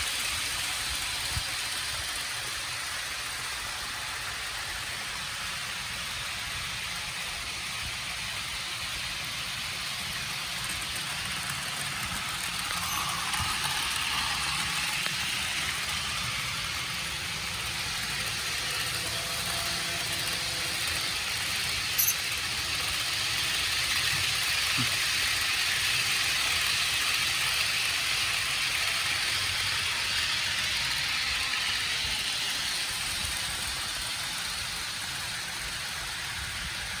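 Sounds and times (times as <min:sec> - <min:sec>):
model train whirring: 0:00.0 - 0:37.0.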